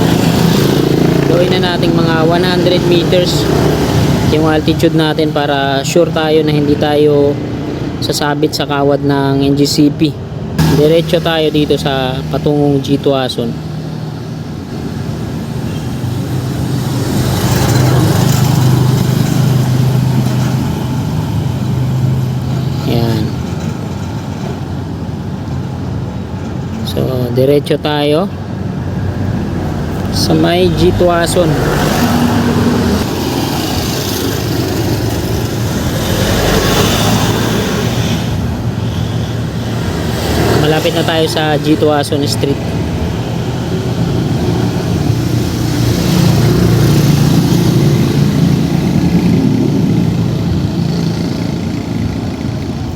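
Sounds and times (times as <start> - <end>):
vehicle engine humming: 0.0 - 6.8, 10.2 - 26.8, 28.0 - 52.9
tyre and road noise: 0.0 - 52.9.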